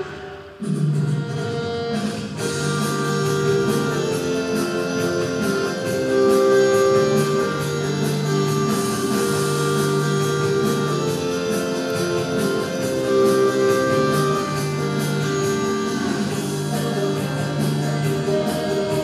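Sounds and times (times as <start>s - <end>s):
instrumental pop music: 0.0s - 19.0s.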